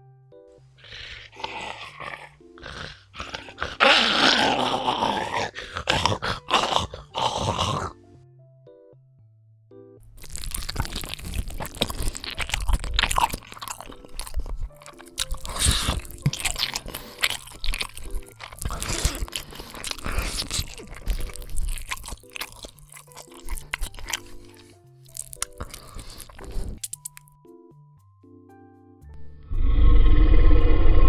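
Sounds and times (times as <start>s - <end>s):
low droning music: 0.0s - 31.0s
crunching and chewing flesh: 0.8s - 8.0s, 10.1s - 27.4s.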